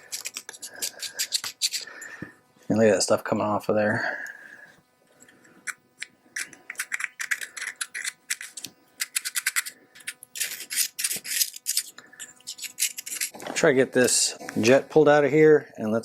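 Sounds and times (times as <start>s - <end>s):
screwdriver scraping metal bowl: 0.0s - 1.9s, 6.4s - 13.4s.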